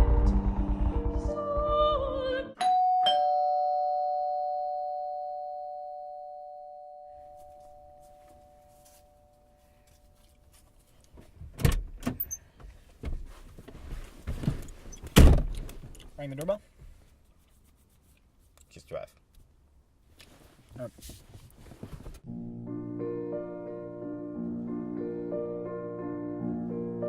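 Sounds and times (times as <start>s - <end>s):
two-tone doorbell chime: 2.6s - 9.5s.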